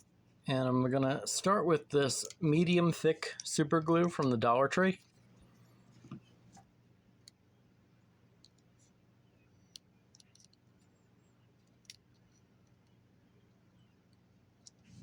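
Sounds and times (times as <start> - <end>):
low steady hum: 0.0 - 15.0
faint clicks and taps of handled objects: 5.0 - 7.4, 8.4 - 9.0, 9.6 - 13.0.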